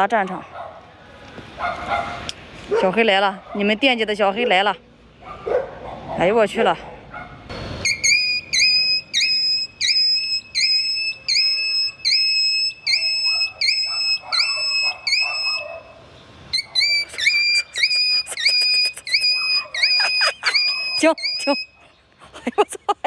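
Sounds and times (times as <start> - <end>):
high whistle-like tone: 7.5 - 15.6, 16.5 - 21.8.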